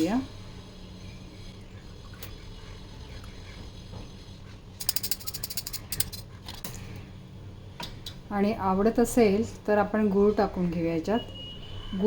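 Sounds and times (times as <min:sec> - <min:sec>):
kitchen utensils rattling: 0:04.8 - 0:06.3.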